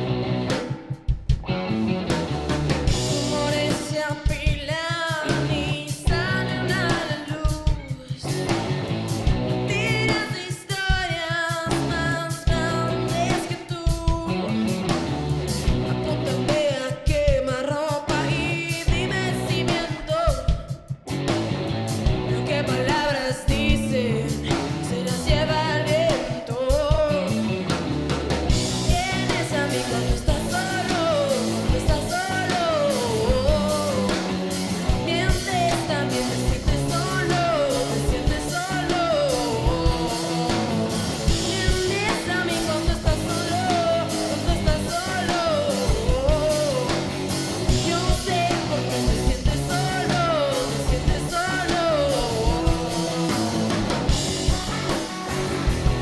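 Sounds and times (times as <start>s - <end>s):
rock band playing: 0.0s - 56.0s.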